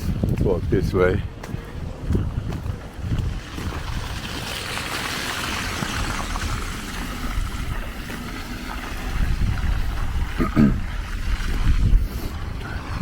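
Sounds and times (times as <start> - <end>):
wind rumbling on microphone: 0.0 - 13.0
car tyres hissing on wet road: 3.4 - 10.4.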